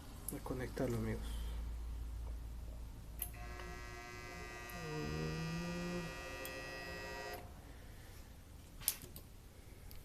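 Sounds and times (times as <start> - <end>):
compressor buzzing: 3.2 - 7.6.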